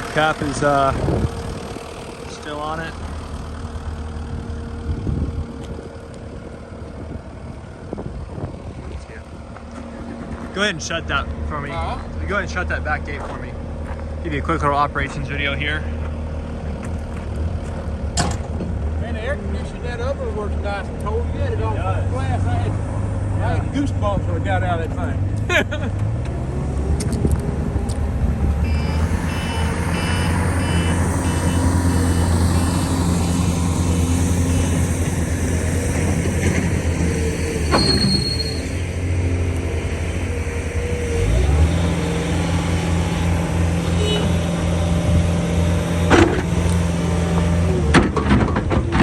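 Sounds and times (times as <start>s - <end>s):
diesel engine running: 0.0s - 49.0s
short alarm beeps: 28.6s - 31.8s.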